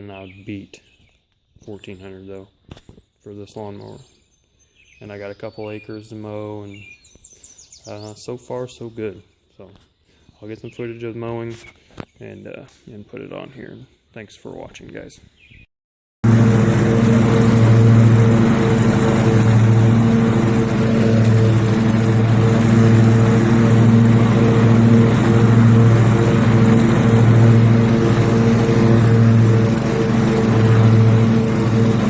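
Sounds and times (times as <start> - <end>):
riding mower engine running: 16.2 - 32.0.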